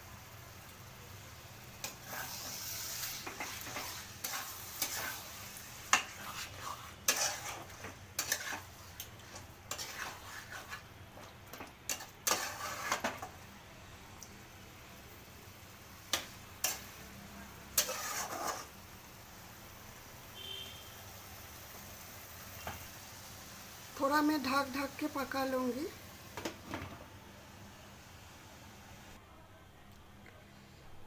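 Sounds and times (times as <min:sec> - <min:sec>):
food sizzling: 0:00.0 - 0:29.2
spoon stirring and scraping pot: 0:01.8 - 0:13.4, 0:16.1 - 0:17.0, 0:17.7 - 0:18.8.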